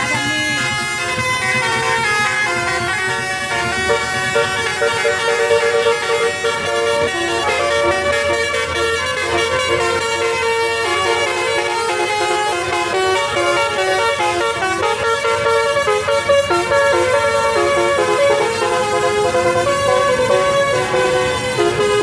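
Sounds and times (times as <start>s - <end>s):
musical bus air horn: 0.0s - 22.0s.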